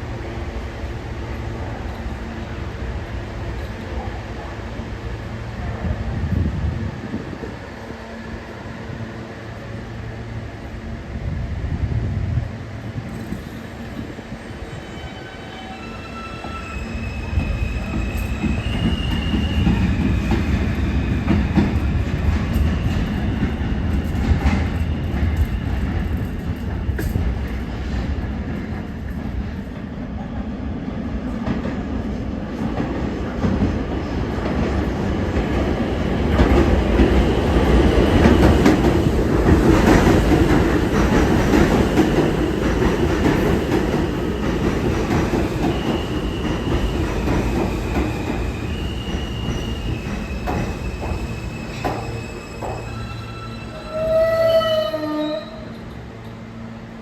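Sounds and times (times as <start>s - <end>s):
subway train rumbling on rails: 0.0s - 57.0s
high wheel squeal: 14.6s - 20.3s, 47.8s - 55.8s.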